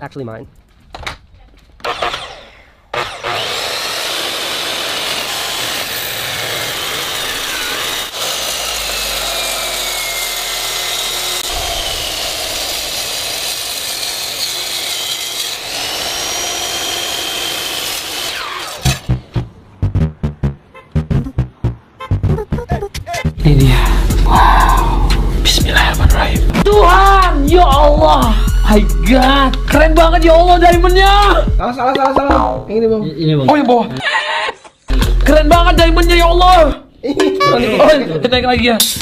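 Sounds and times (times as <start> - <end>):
power tool grinding metal: 1.8 - 19.1.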